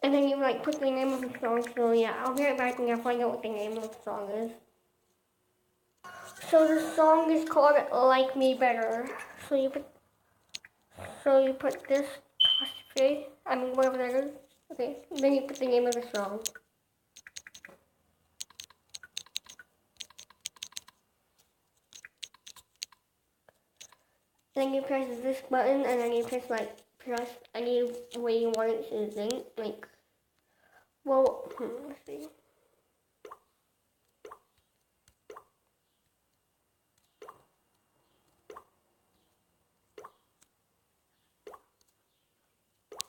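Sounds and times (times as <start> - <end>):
fingertips tapping touchscreen: 0.6 - 4.4, 6.1 - 29.5, 33.2 - 36.2, 36.9 - 40.6
touchscreen typing clicks: 0.7 - 2.8, 8.8 - 9.7, 11.6 - 14.1, 15.0 - 17.8, 18.4 - 21.0, 21.9 - 23.0.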